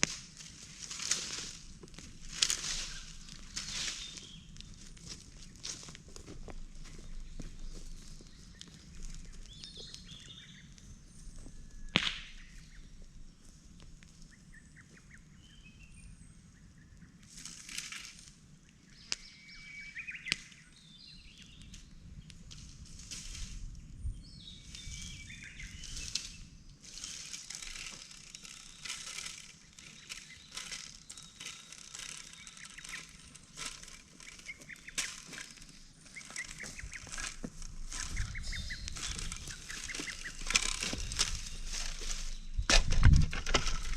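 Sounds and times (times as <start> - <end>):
rustling noise: 0.0 - 10.1, 22.5 - 23.8, 24.6 - 43.9
small birds chirping: 0.0 - 17.5, 18.4 - 22.5, 23.6 - 43.9.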